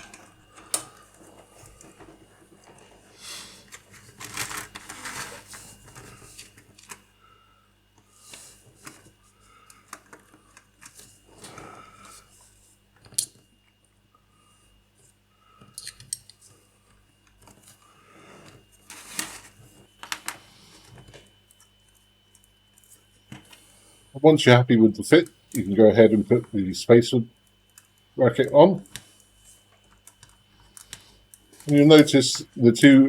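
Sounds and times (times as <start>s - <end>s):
plastic parts scraping and rustling: 0.0s - 7.0s, 18.9s - 21.2s.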